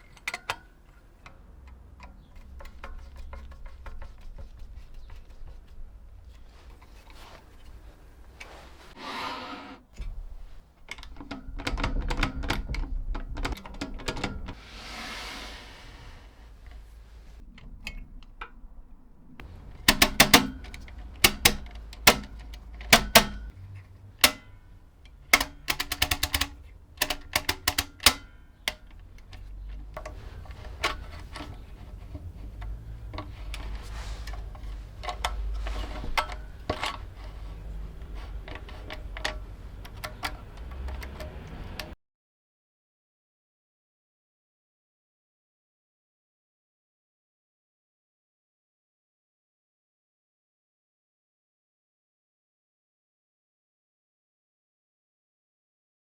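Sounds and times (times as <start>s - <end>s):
mechanical calculator clicking: 19.4s - 42.0s.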